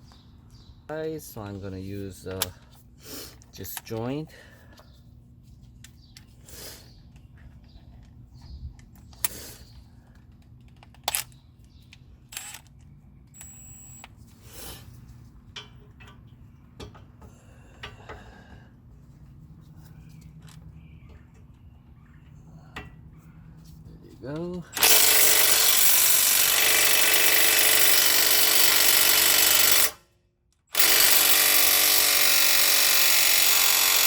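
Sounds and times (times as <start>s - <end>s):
low steady hum: 0.2s - 24.8s.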